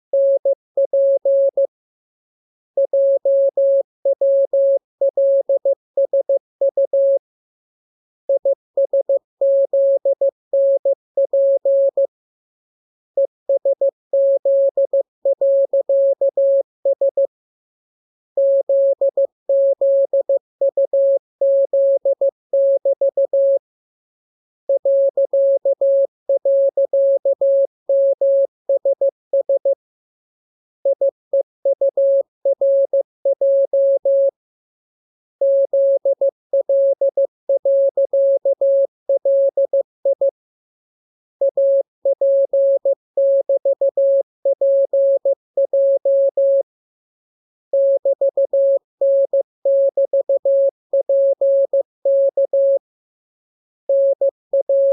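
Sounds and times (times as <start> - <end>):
morse code beeps: 0.2 - 1.7, 2.8 - 7.2, 8.4 - 12.1, 13.2 - 17.3, 18.4 - 23.6, 24.7 - 29.8, 30.8 - 34.4, 35.4 - 40.4, 41.4 - 46.7, 47.7 - 52.8, 53.9 - 54.9.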